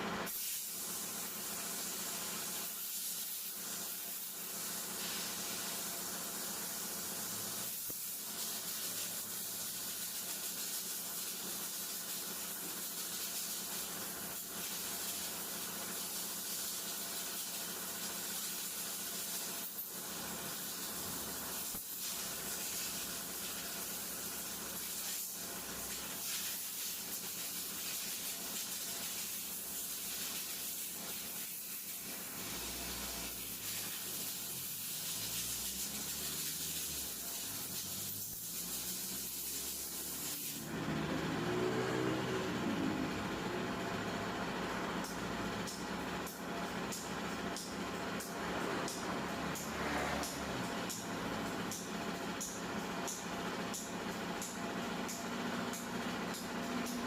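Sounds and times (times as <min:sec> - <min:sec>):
steady hissing noise: 0:00.0 - 0:40.7.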